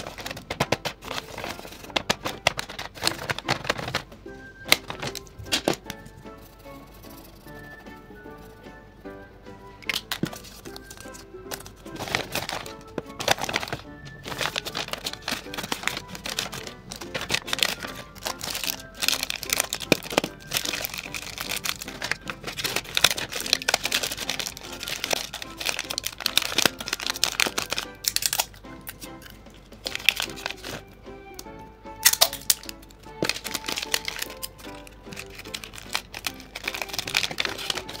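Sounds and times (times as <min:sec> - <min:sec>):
paper crinkling and rustling: 0:00.0 - 0:06.1, 0:09.8 - 0:30.9, 0:32.0 - 0:38.0
light background music: 0:00.0 - 0:38.0.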